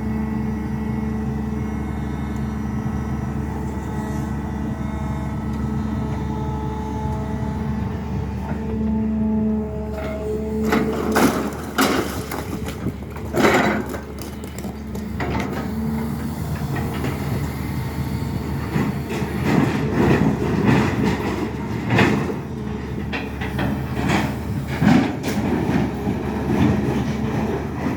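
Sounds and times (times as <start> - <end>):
excavator engine droning: 0.0 - 27.9
metal scraping on rock: 9.9 - 15.7.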